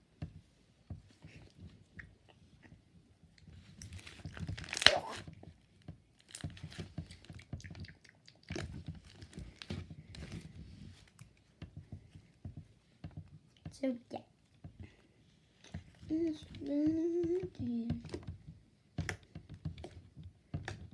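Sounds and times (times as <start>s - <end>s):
slime squeezed crackling pops: 4.6s - 5.2s.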